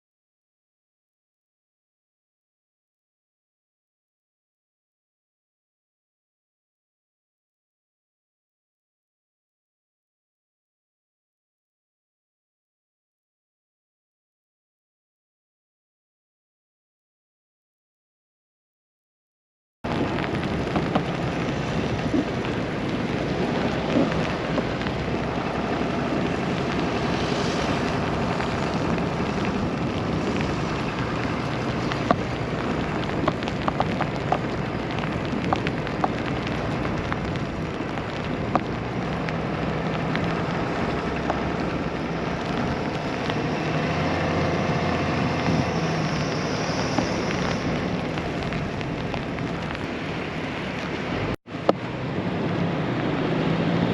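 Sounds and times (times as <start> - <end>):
storm wind with driving snow: 19.9 - 53.9.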